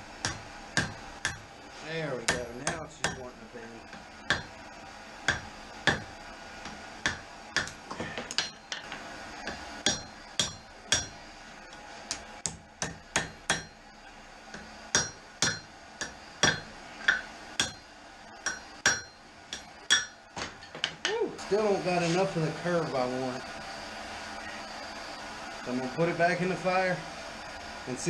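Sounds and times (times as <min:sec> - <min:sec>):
hammer striking steel on anvil: 0:00.2 - 0:01.5, 0:02.2 - 0:03.3, 0:04.3 - 0:04.6, 0:05.3 - 0:11.2, 0:12.4 - 0:13.8, 0:14.5 - 0:20.2.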